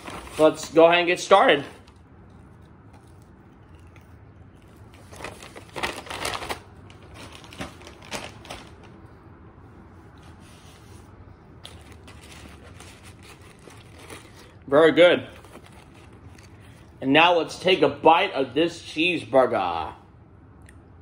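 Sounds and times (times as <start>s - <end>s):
paper packaging crinkling: 0.0s - 2.0s, 4.6s - 9.0s, 11.6s - 14.6s, 15.3s - 16.8s.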